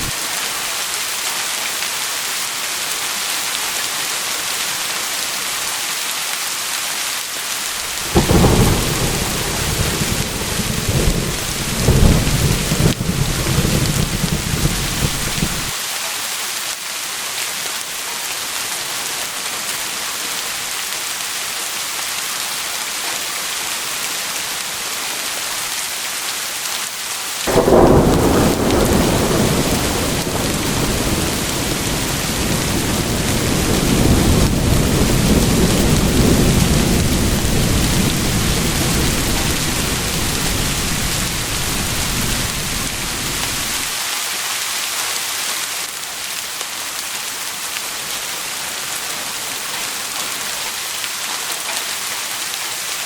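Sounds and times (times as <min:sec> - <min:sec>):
steady rain hiss: 0:00.0 - 0:53.0
rolling thunder: 0:07.8 - 0:15.7, 0:27.5 - 0:43.9.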